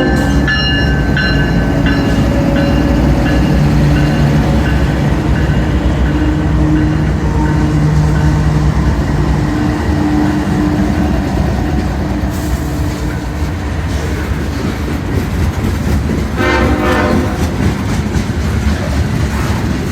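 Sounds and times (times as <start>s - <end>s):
train rumble and wheel clatter: 0.0s - 19.9s
locomotive horn: 16.4s - 17.8s.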